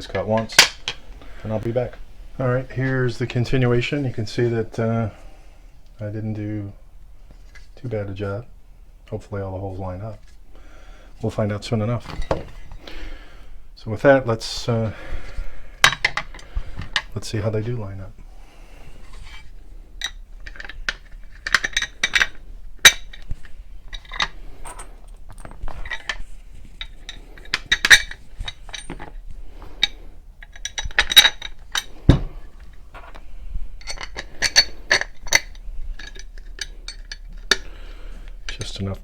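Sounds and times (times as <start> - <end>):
metal screws clinking: 19.2 - 37.7.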